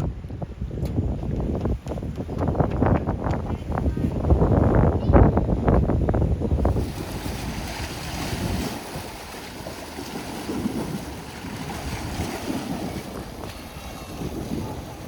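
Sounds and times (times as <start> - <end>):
wind buffeting microphone: 0.0 - 15.0
sea waves: 6.5 - 15.0.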